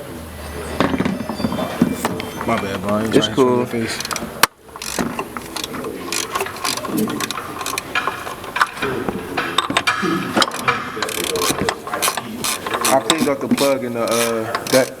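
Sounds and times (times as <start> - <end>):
ratchet wrench clicking: 3.9 - 15.0.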